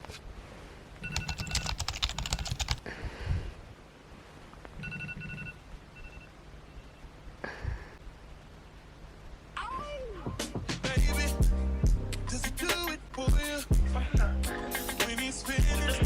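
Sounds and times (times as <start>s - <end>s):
rapid clicks: 1.1s - 2.8s.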